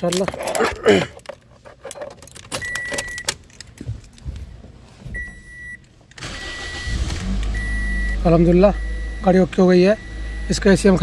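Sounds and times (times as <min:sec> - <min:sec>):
car engine cranking and idling: 0:00.0 - 0:11.0
short high beeps: 0:07.6 - 0:09.3, 0:10.0 - 0:10.7.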